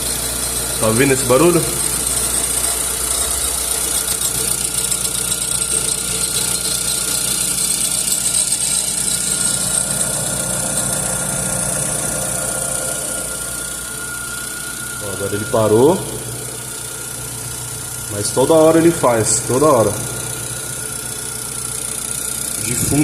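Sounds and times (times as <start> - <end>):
car engine idling: 0.0 - 23.0
extra noise over engine idle: 0.0 - 23.0.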